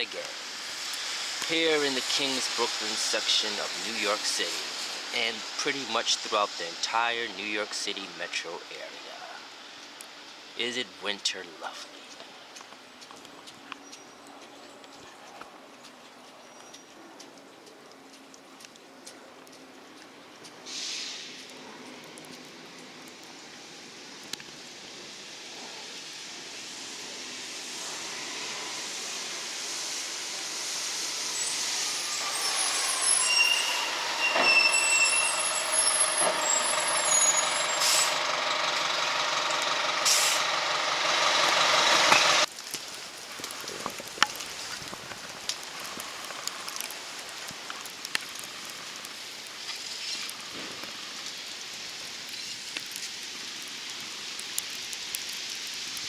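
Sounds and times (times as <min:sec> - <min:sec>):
air brakes squealing and hissing: 0:00.0 - 0:07.6, 0:20.6 - 0:21.6, 0:26.0 - 0:42.5
steady hiss: 0:00.0 - 0:13.1, 0:20.0 - 0:56.0
heavy truck approaching: 0:26.1 - 0:42.5.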